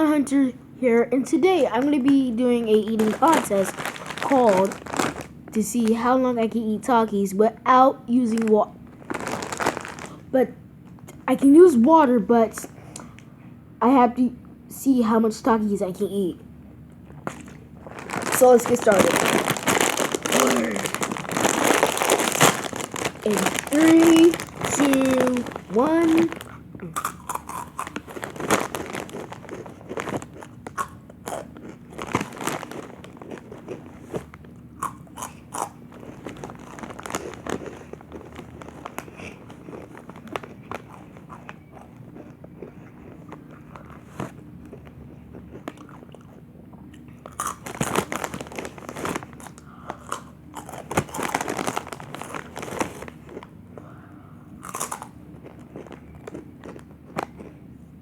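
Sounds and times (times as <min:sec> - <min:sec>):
chips crunching while chewed: 0:01.7 - 0:06.0, 0:08.2 - 0:10.3, 0:17.1 - 0:53.6, 0:54.6 - 0:57.6.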